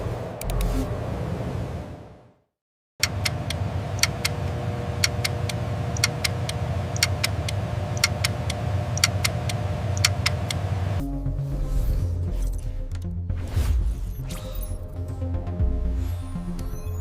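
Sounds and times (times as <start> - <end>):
sharp clicks: 3.0 - 10.6
machine hum with low rumble: 3.0 - 11.8.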